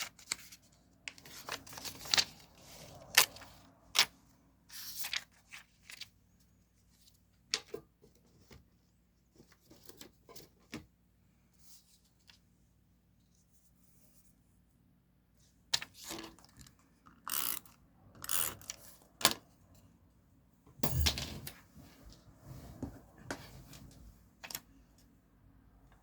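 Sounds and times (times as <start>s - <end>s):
paper and sticker sheets rustling: 0.0s - 3.7s
heavy thud: 20.8s - 21.5s.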